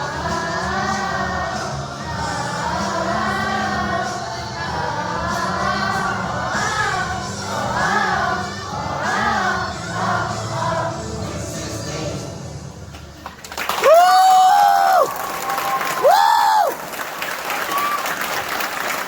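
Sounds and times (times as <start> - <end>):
children singing together: 0.0 - 12.0.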